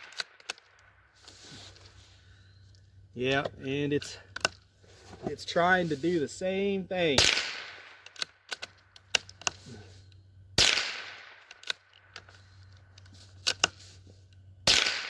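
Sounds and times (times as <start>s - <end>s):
metallic clicks of rifle action: 0.0s - 1.0s, 7.9s - 10.2s, 11.4s - 14.4s
rifle shots with ringing tail: 7.1s - 8.5s, 10.6s - 11.9s, 14.6s - 15.0s.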